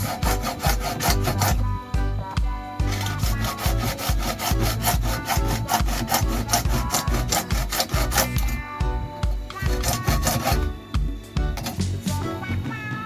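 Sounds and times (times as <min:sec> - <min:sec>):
saw cutting pipe: 0:00.0 - 0:01.9, 0:02.8 - 0:08.6, 0:09.4 - 0:10.8, 0:11.6 - 0:11.9
background music with steady beat: 0:00.0 - 0:13.0.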